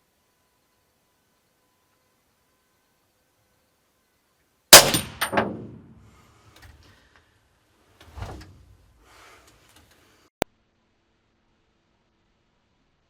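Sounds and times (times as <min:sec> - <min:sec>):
gunshot with echo: 0:04.7 - 0:05.8.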